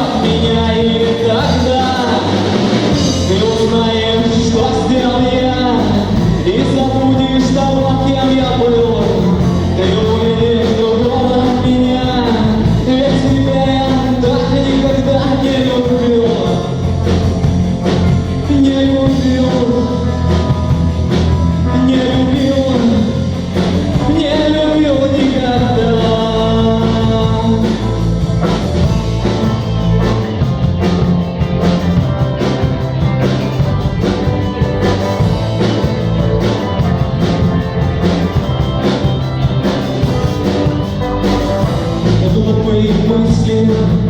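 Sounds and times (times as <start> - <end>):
bass: 0.0 - 44.0
lead guitar line: 0.0 - 44.0
steady drum beat: 0.0 - 44.0.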